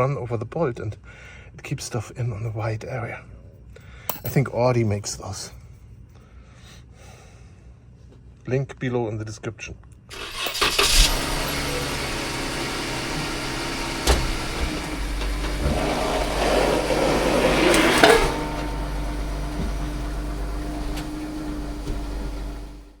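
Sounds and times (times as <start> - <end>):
car engine idling: 10.1 - 23.0.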